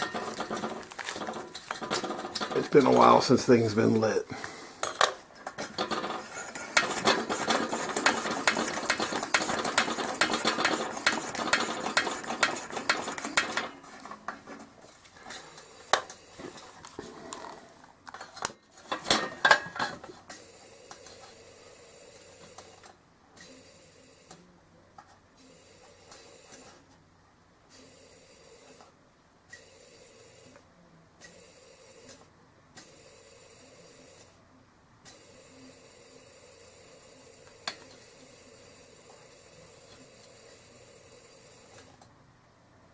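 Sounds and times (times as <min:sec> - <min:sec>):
metallic rattling and clicking: 0:00.0 - 0:03.0, 0:04.8 - 0:15.4.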